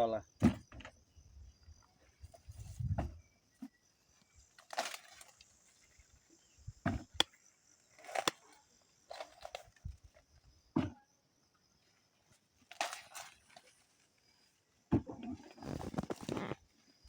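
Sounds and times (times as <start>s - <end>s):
dry corn plants rustling: 3.6s - 10.5s, 11.8s - 17.0s
corn ears snapping off stalks: 4.5s - 5.5s, 6.9s - 10.0s, 12.6s - 13.8s.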